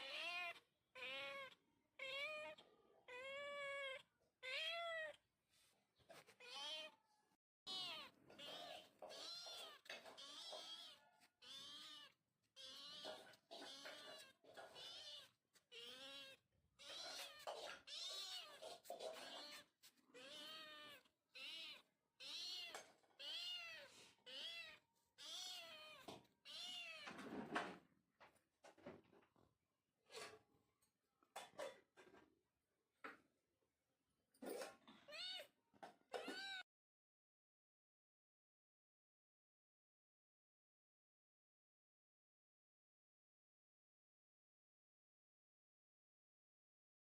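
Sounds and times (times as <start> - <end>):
cat meowing: 0.0 - 5.2, 6.3 - 7.0, 7.7 - 27.2, 35.0 - 36.6.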